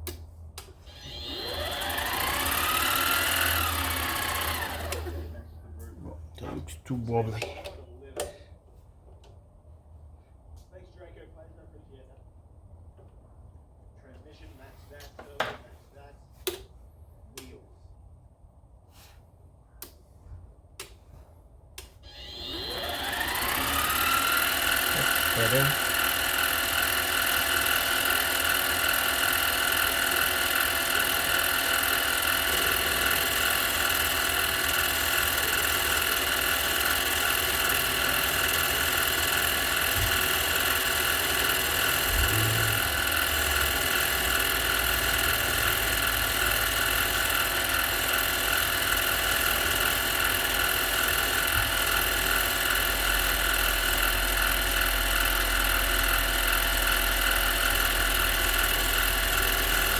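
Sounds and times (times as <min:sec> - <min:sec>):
mechanical drone with whining tones: 0:00.8 - 0:05.2, 0:22.0 - 0:25.7, 0:41.9 - 0:46.8.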